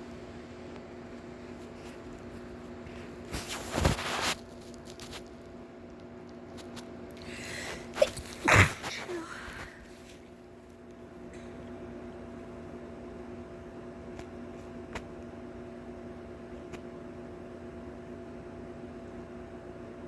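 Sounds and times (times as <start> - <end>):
audible breath in: 7.2 - 7.9
person sneezing: 7.3 - 9.9.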